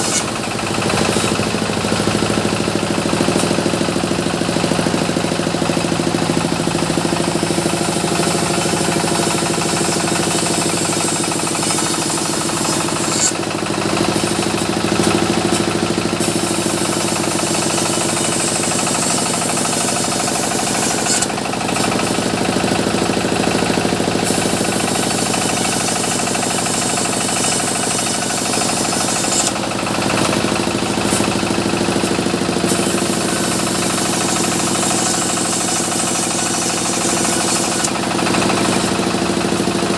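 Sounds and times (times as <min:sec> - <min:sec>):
high saw hiss: 0:00.0 - 0:01.4, 0:07.8 - 0:13.5, 0:16.2 - 0:21.4, 0:24.2 - 0:29.8, 0:32.7 - 0:38.0
sawmill machinery drone: 0:00.0 - 0:39.9.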